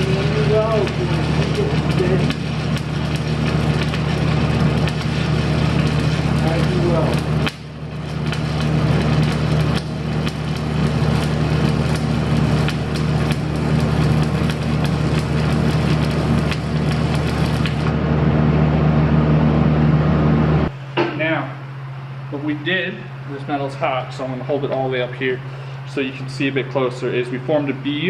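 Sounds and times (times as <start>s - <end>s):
welding arc crackling and popping: 0.0s - 18.0s
welding machine hum: 0.0s - 20.7s.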